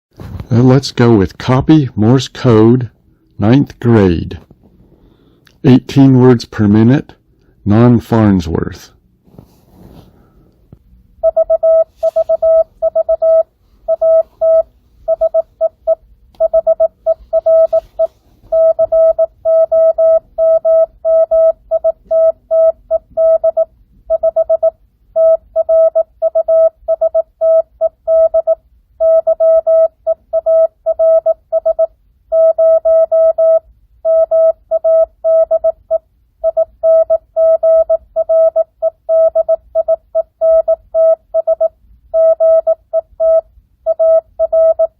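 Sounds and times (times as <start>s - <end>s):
morse code tone beeping: 11.2s - 44.9s.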